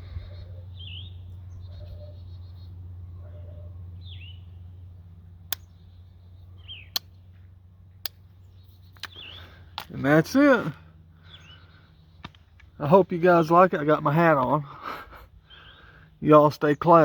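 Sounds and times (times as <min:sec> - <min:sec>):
birds chirping: 0:00.0 - 0:17.0
steady low hum: 0:00.0 - 0:17.0
sharp clicks: 0:06.9 - 0:07.2.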